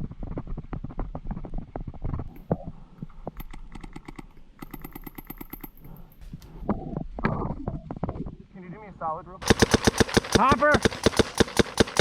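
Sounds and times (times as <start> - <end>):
low thumps and rustling: 0.0 - 8.5
paintball marker fire: 9.4 - 12.0.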